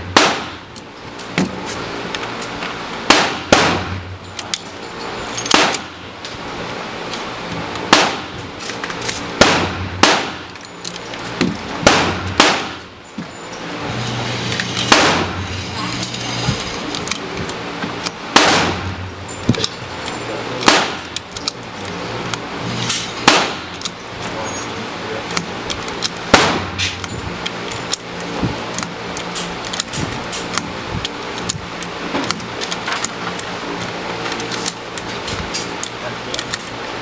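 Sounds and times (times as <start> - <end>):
loud gunshots: 0.0 - 0.7, 3.1 - 4.1, 5.5 - 6.0, 7.9 - 8.4, 9.4 - 10.5, 11.8 - 12.8, 14.8 - 15.5, 18.3 - 19.1, 20.6 - 21.2, 23.2 - 23.7, 26.3 - 26.9
faint sharp gunshot cracks: 9.4 - 10.4.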